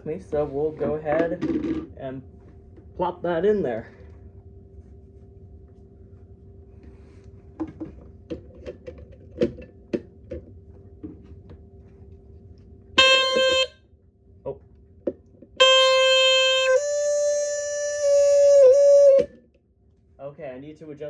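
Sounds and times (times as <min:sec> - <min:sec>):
smoke alarm shrill tone: 0:13.0 - 0:13.8, 0:15.6 - 0:19.3.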